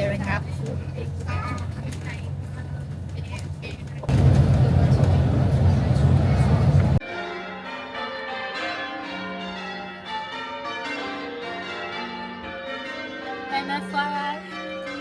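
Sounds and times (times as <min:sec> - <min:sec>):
chiming bell-like music: 0:07.0 - 0:15.0.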